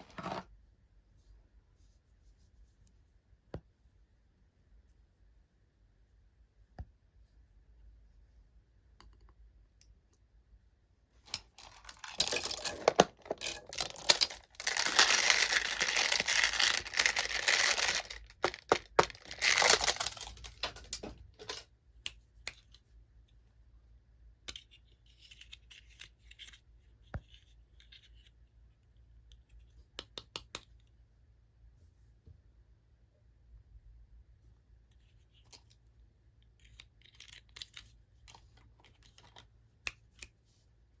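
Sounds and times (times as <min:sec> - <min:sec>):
packaging tearing and crinkling: 0:11.6 - 0:20.7.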